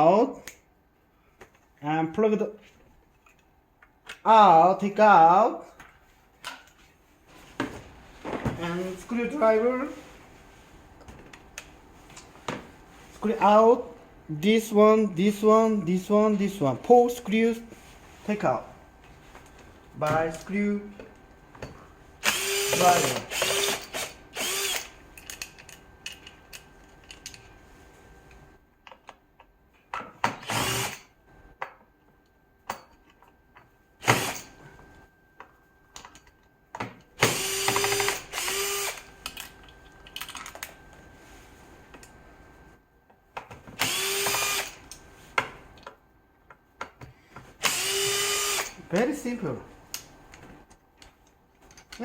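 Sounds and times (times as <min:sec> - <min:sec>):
electric screwdriver whining: 0:22.2 - 0:25.0, 0:30.4 - 0:31.0, 0:37.3 - 0:39.1, 0:43.8 - 0:44.8, 0:47.6 - 0:48.8.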